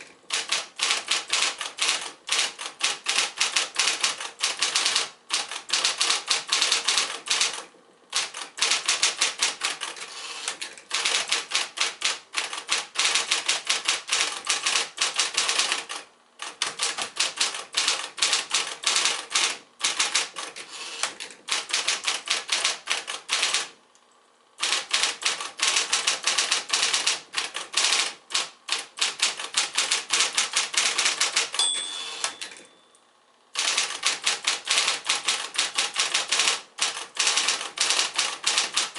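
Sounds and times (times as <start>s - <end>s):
typewriter motor hum: 0.0s - 23.8s, 24.6s - 32.6s, 33.5s - 38.9s
typewriter keystrokes: 0.3s - 23.8s, 24.6s - 32.7s, 33.6s - 38.9s
typewriter bell ringing: 31.6s - 33.0s.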